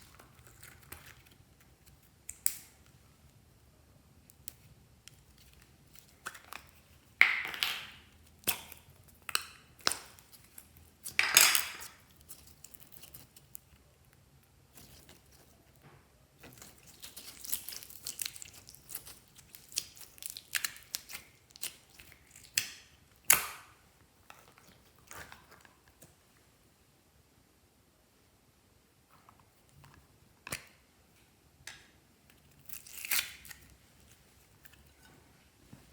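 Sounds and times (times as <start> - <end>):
slime squishing by hand: 4.2 - 26.2.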